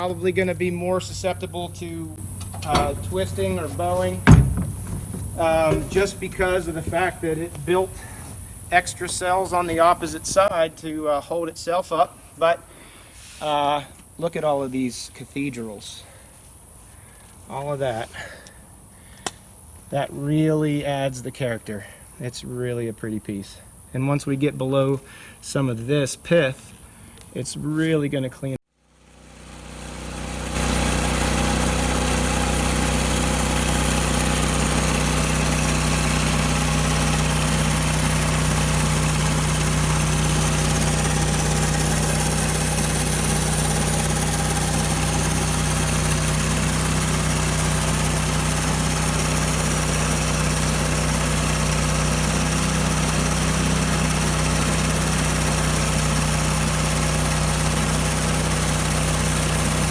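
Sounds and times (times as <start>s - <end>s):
sawmill engine running: 0.0s - 10.7s, 28.9s - 59.9s.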